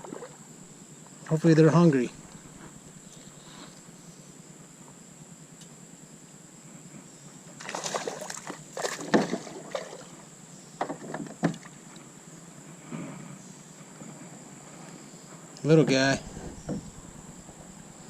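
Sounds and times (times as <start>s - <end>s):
paddle knocking against hull: 8.5s - 9.9s, 16.2s - 18.0s
kayak paddle strokes: 16.2s - 18.0s.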